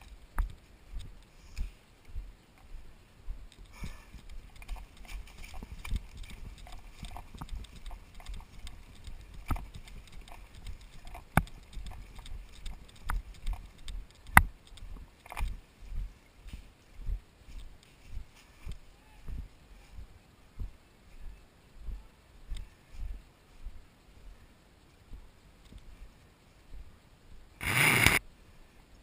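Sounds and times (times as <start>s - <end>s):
footsteps: 0.0s - 23.8s
sharp clicks: 3.5s - 15.5s, 27.6s - 28.2s.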